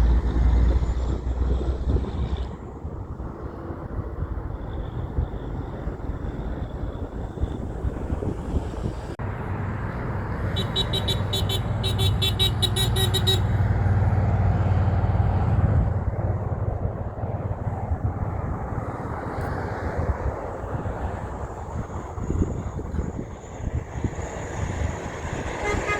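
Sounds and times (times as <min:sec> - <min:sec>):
truck engine drone: 0:00.0 - 0:25.9
truck horn short toots: 0:10.5 - 0:13.6, 0:25.6 - 0:25.9.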